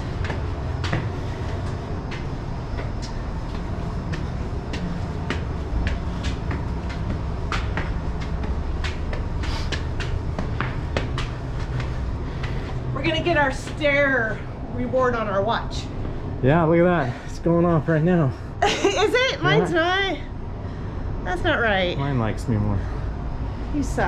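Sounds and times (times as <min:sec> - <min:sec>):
footsteps climbing stairs: 0:00.0 - 0:14.6
steady low rumble: 0:00.0 - 0:24.0.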